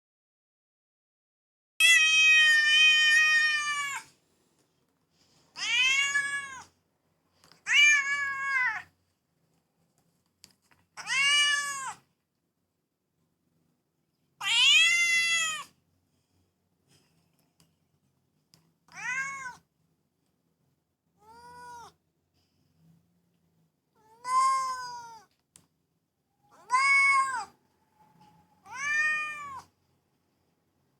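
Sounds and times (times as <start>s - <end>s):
cat meowing: 1.8s - 4.1s, 5.6s - 6.7s, 7.6s - 8.9s, 11.0s - 12.0s, 14.4s - 15.7s, 18.9s - 19.6s, 21.2s - 22.0s, 24.0s - 25.3s, 26.5s - 27.6s, 28.6s - 29.7s.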